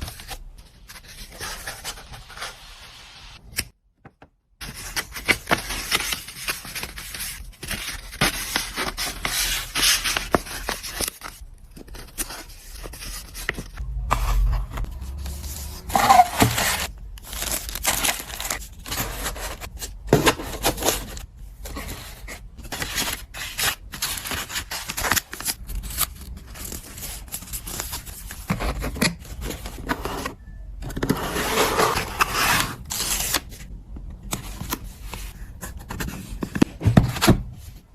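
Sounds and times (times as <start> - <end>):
packaging material rustling: 14.7 - 21.2.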